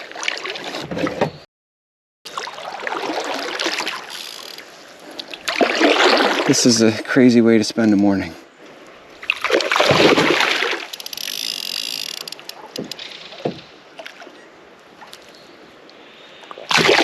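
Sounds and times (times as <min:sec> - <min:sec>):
water splashing beside kayak: 0:02.3 - 0:06.8, 0:08.6 - 0:15.3
water lapping: 0:02.3 - 0:06.9, 0:08.6 - 0:17.0.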